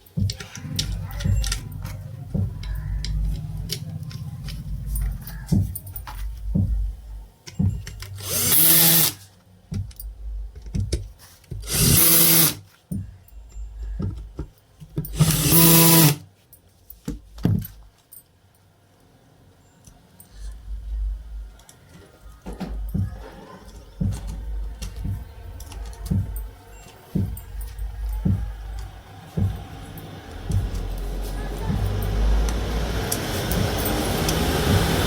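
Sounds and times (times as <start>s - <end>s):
handling knocks and clicks: 0.0s - 9.0s, 9.7s - 16.2s, 16.9s - 18.1s, 19.9s - 35.0s
power tool motor running: 8.2s - 9.2s, 11.7s - 12.6s, 15.1s - 16.2s, 28.8s - 35.0s.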